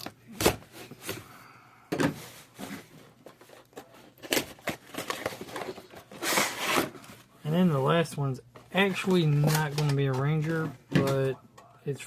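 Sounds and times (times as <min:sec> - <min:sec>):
packaging rustling: 0:02.3 - 0:07.4, 0:08.6 - 0:10.7.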